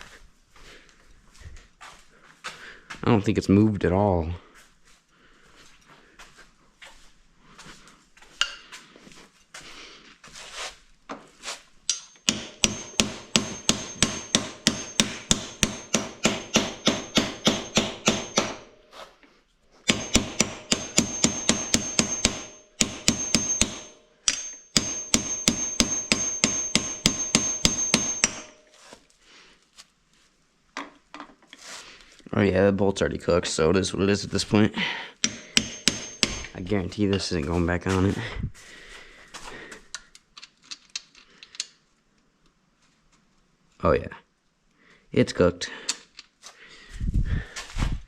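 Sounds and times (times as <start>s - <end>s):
hammer striking steel: 11.9s - 18.8s, 19.9s - 28.7s, 35.2s - 37.3s.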